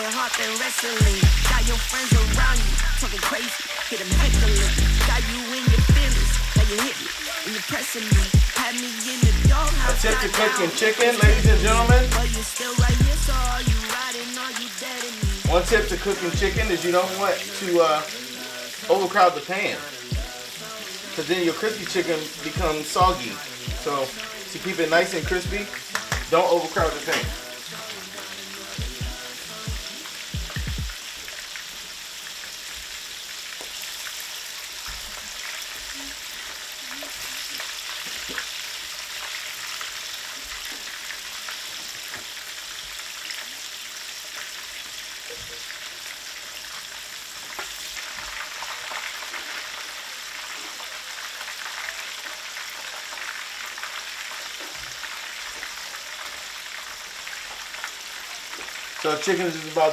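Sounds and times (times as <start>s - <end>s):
chicken deep-frying in oil: 0.0s - 59.9s.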